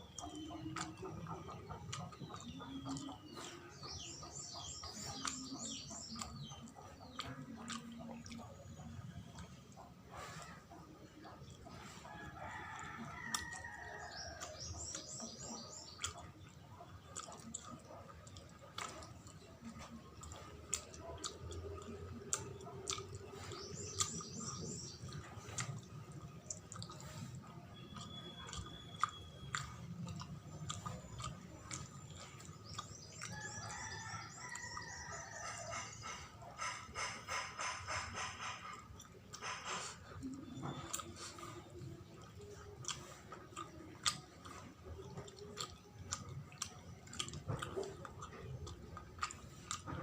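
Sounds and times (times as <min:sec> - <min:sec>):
birds chirping: 0:00.0 - 0:50.0
chewing sticky rice sweet: 0:00.0 - 0:50.0
sharp wet clicks: 0:00.0 - 0:50.0.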